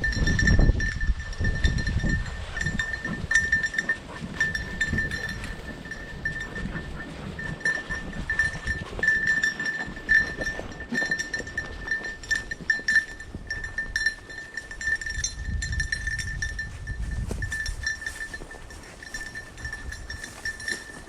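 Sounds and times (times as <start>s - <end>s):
dog collar bell ringing: 0.0s - 21.0s
footsteps: 16.4s - 21.0s
rustle of brush: 16.6s - 21.0s.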